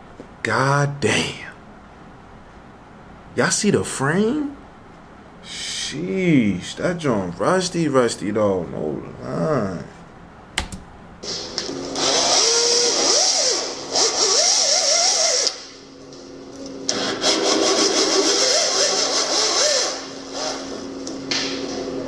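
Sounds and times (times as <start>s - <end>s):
small motor running: 12.0s - 15.6s, 17.0s - 20.8s.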